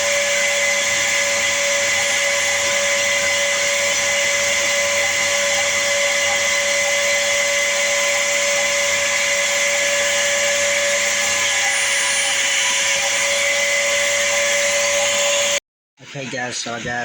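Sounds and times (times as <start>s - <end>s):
electric power tool whining: 0.0s - 15.6s.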